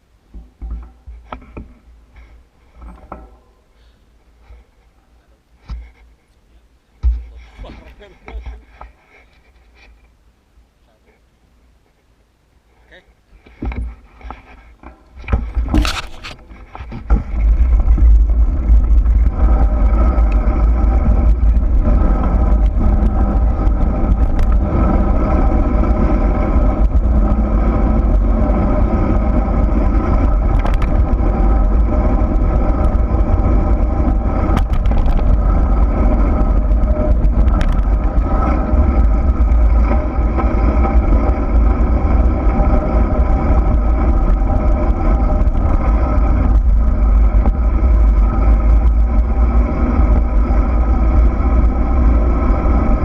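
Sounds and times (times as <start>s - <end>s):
rolling rumble on dirt trail: 0.0s - 53.0s
wind rush: 15.2s - 53.0s.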